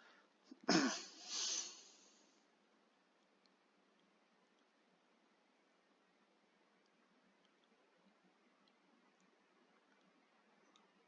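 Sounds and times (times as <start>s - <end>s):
computer mouse clicks: 6.8s - 11.0s.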